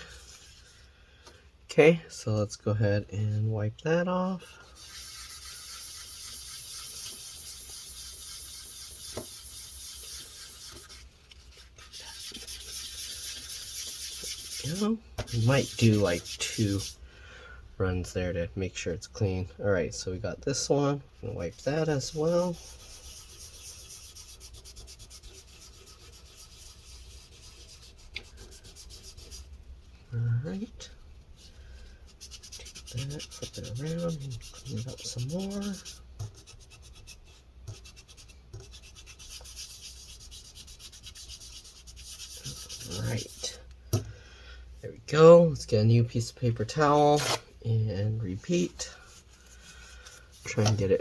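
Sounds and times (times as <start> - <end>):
paper towel rubbing metal: 4.3 - 17.0, 21.2 - 43.6, 46.2 - 51.0.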